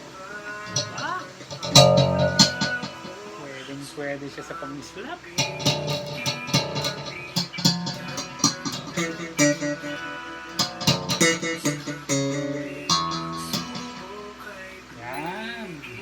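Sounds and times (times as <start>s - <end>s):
slap bass guitar: 0.7s - 3.3s, 5.4s - 14.3s.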